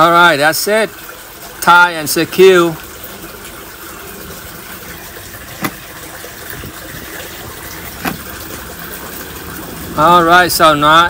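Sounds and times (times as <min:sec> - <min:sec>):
steady water-like noise: 0:00.0 - 0:11.0
short sharp knocks: 0:08.0 - 0:08.3.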